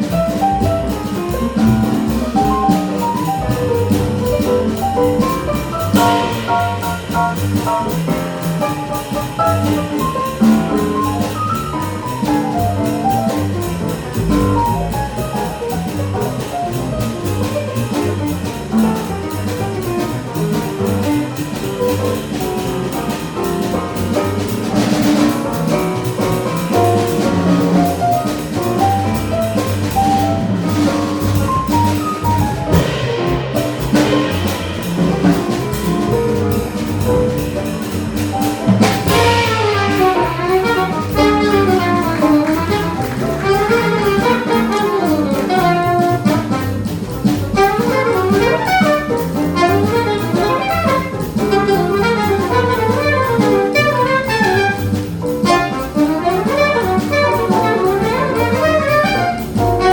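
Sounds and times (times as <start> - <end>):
drums: 0.0 - 59.9
piano: 0.0 - 59.9
walking bass: 0.0 - 59.9.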